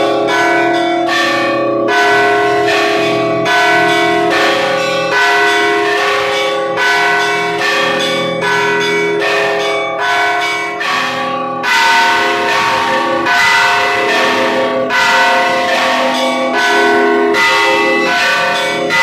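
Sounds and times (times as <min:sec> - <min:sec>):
church bells ringing a peal: 0:00.0 - 0:19.0.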